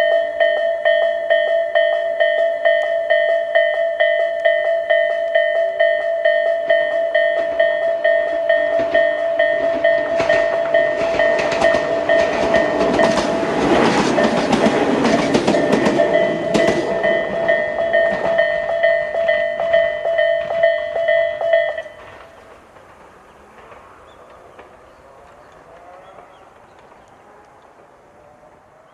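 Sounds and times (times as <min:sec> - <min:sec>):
electronic crossing bell tone: 0:00.0 - 0:22.2
train wheels clacking on rail joints: 0:00.0 - 0:28.9.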